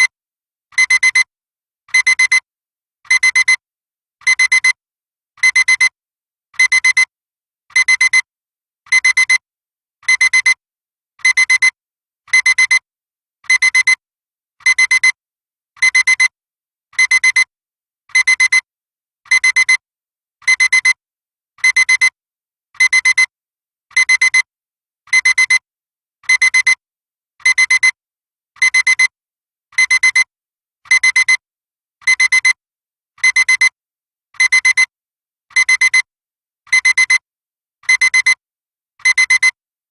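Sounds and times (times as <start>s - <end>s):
digital alarm clock beeping: 0.8s - 1.3s, 2.0s - 2.4s, 29.8s - 30.3s, 33.2s - 33.7s, 36.7s - 37.2s, 37.9s - 38.4s, 39.0s - 39.6s.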